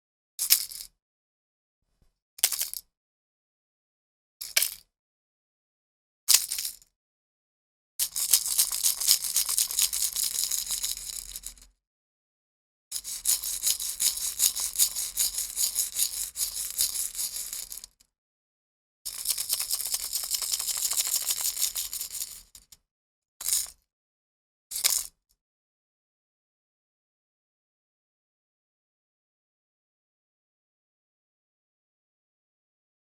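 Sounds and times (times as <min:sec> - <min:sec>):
small box of screws rattling: 0:08.1 - 0:11.7, 0:13.0 - 0:18.0, 0:19.1 - 0:22.7.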